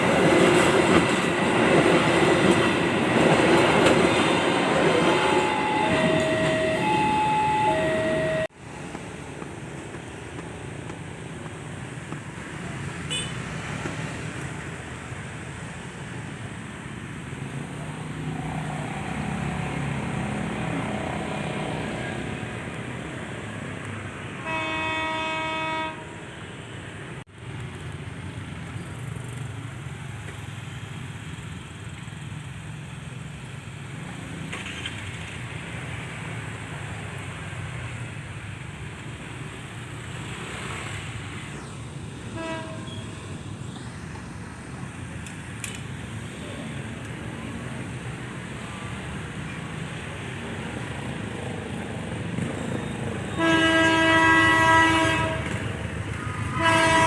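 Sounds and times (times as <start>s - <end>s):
train rumbling: 0.0s - 57.0s
tinny locomotive horn: 3.7s - 8.5s, 24.4s - 26.2s, 42.3s - 43.3s, 53.3s - 55.7s, 56.4s - 57.0s.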